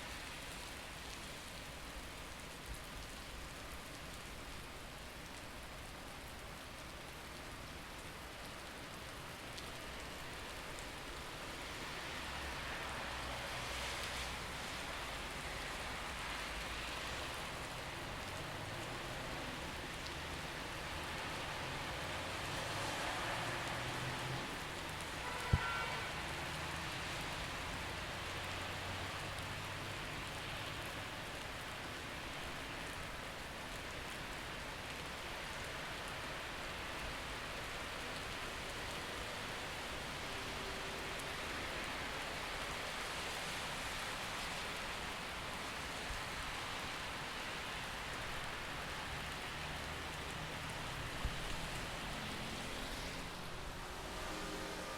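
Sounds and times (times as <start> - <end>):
steady rain falling: 0.0 - 54.9
passing traffic rumble: 17.7 - 25.2, 46.8 - 54.9.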